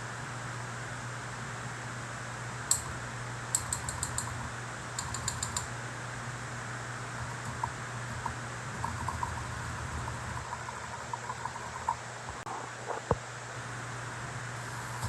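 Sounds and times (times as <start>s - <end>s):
typewriter keystrokes: 5.0s - 5.7s.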